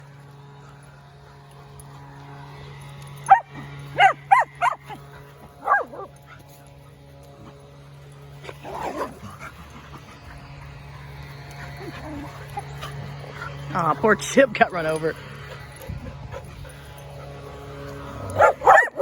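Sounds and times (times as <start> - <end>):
low background hum: 0.0 - 19.0
dogs barking: 3.2 - 6.6, 18.1 - 19.0.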